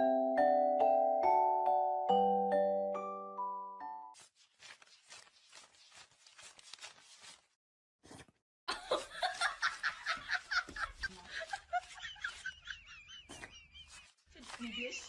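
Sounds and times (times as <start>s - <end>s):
mallet instrument music: 0.0s - 4.1s
faint scratching and rustling: 4.2s - 7.5s, 9.2s - 15.0s.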